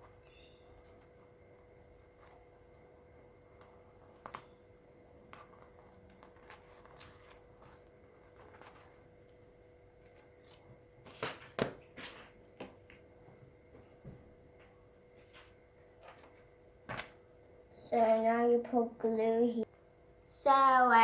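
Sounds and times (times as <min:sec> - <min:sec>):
paper rustling and crinkling: 0:05.3 - 0:13.0, 0:15.1 - 0:17.2.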